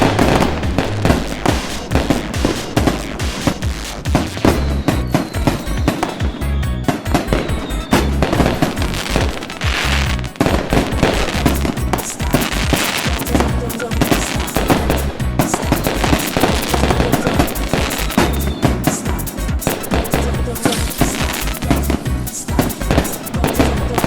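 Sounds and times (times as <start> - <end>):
fireworks bangs and crackling: 0.0 - 24.0
music with deep bass: 0.0 - 24.0.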